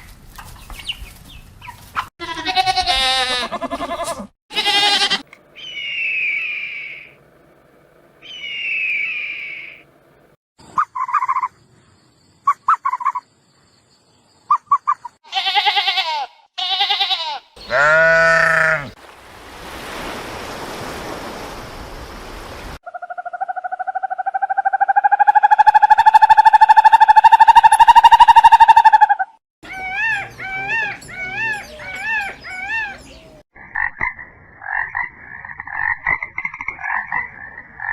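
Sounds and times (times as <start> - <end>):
quavering pitched animal calls: 2.3 - 7.2, 8.2 - 9.8, 16.6 - 19.0, 22.9 - 37.9.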